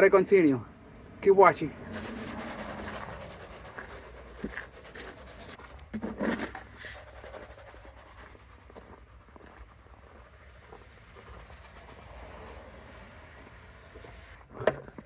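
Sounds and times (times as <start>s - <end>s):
rock salt scratching and crunching: 1.8s - 13.1s.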